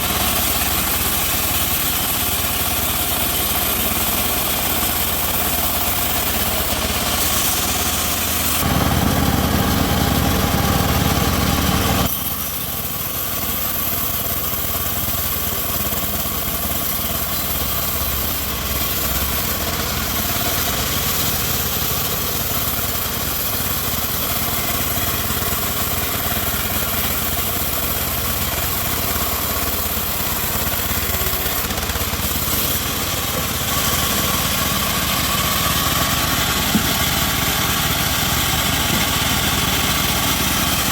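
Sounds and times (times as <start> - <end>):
bandsaw sawmill droning: 0.0 - 40.9.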